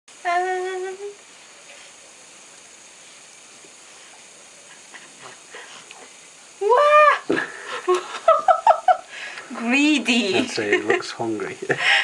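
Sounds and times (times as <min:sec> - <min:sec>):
low steady background: 0:00.1 - 0:12.0
faint soft ticks: 0:02.5 - 0:02.7.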